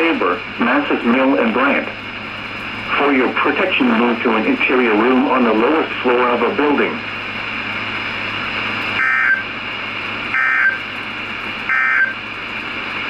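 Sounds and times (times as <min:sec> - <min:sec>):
radio hiss: 0:00.0 - 0:13.0
harsh digital warbles: 0:09.0 - 0:09.5, 0:10.3 - 0:10.8, 0:11.7 - 0:12.2.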